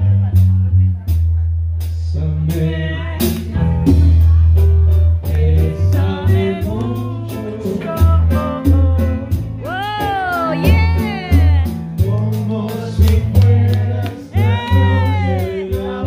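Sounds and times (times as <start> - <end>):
bass: 0.0 - 16.0
guitar: 0.0 - 16.0
regular beat: 0.0 - 16.0
person singing: 5.2 - 16.0.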